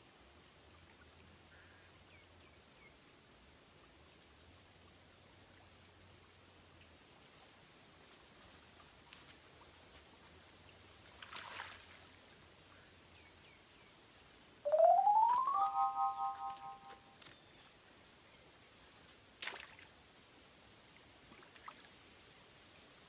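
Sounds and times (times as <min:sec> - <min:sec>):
outro music: 0:14.7 - 0:17.0
rising electronic tone: 0:14.7 - 0:17.0.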